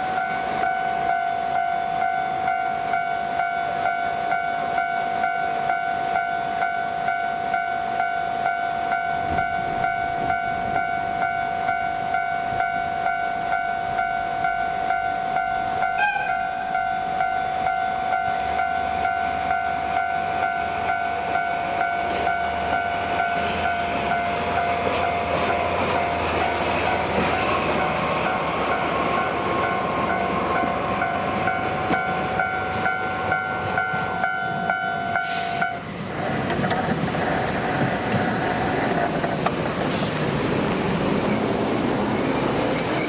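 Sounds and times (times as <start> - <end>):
level-crossing warning bell ringing: 0.0 - 35.9
train wheels rumbling and clattering: 17.1 - 43.0.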